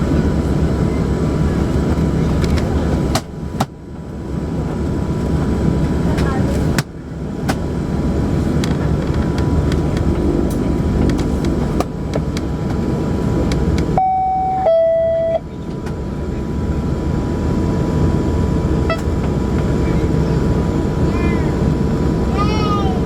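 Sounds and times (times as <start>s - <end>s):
turboprop engines cabin noise: 0.0s - 23.0s
two-note cabin chime: 14.0s - 15.4s.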